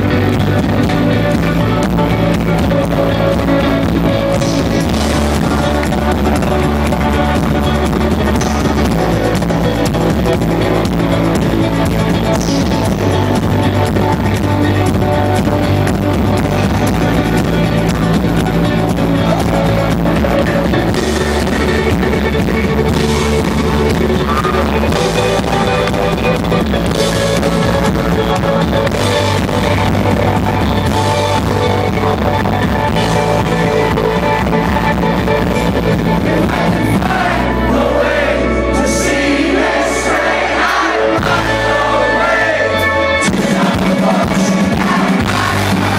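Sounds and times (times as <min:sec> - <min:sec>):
live rock band playing: 0:00.0 - 0:45.9
person singing: 0:33.1 - 0:45.9.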